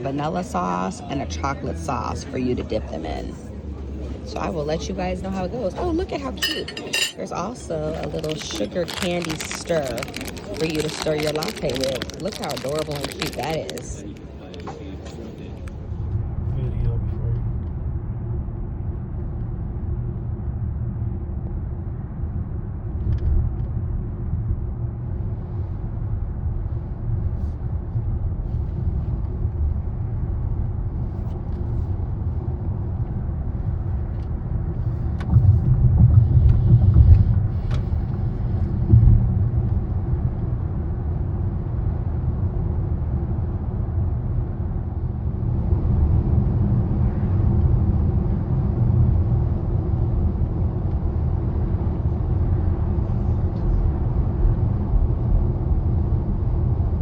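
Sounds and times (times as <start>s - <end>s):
wind buffeting microphone: 22.0s - 57.0s.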